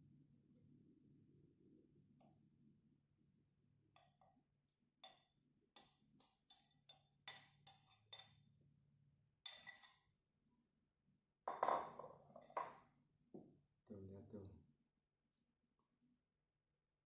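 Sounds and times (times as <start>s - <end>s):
spoon clinking against a bowl: 5.0s - 8.5s, 9.4s - 10.1s.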